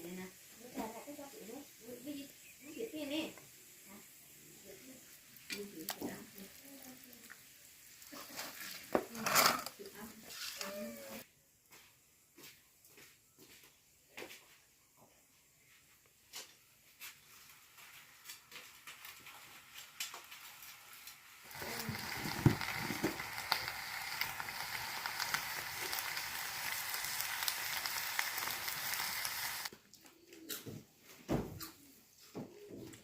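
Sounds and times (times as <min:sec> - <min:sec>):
food sizzling in hot pan: 0:00.0 - 0:11.3, 0:17.0 - 0:29.7.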